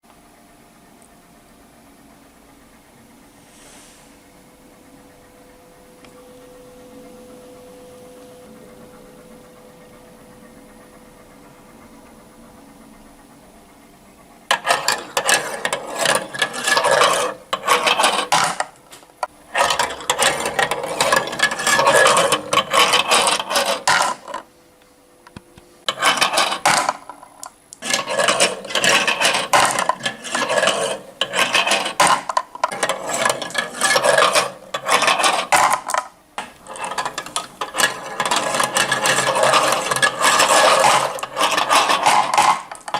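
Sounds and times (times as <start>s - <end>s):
faint steady hum: 0.0s - 42.9s
marbles rattling along track: 14.5s - 18.8s, 19.5s - 24.4s, 25.9s - 42.9s.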